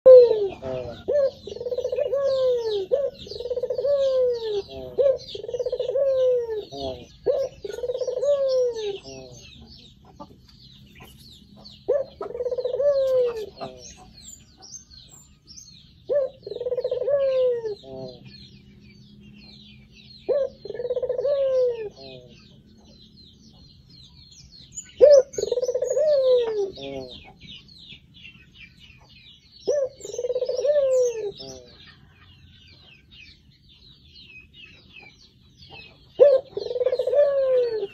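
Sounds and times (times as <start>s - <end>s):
low arching bird call: 0.1s - 9.5s, 16.1s - 18.5s, 24.8s - 27.3s, 29.6s - 32.0s, 36.2s - 37.9s
high twittering of small birds: 0.1s - 37.9s.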